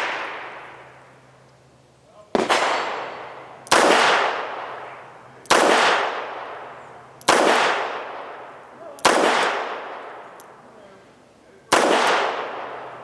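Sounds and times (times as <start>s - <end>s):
revolver shots echoing: 2.3s - 8.4s, 11.7s - 13.0s.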